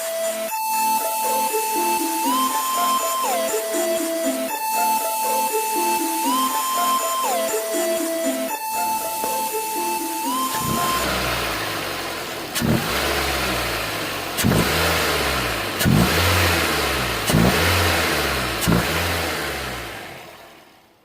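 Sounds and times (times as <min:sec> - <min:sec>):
car engine revving: 0:10.5 - 0:21.0.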